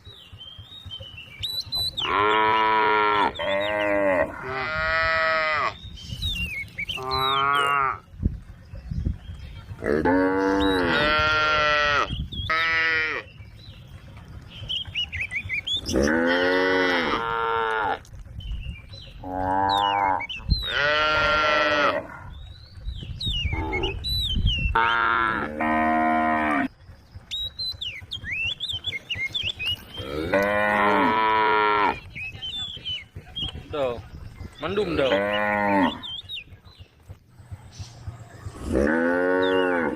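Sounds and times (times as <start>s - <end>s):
cows mooing: 1.8s - 5.8s, 6.8s - 8.1s, 9.8s - 13.4s, 15.7s - 18.1s, 19.2s - 22.4s, 23.5s - 24.1s, 24.7s - 26.8s, 29.8s - 32.1s, 34.8s - 36.2s, 38.4s - 39.9s.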